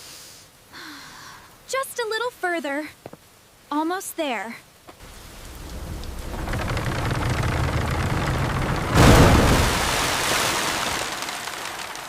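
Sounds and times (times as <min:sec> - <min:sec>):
heavy rain: 0:05.0 - 0:12.0
thunder crack: 0:05.0 - 0:12.0.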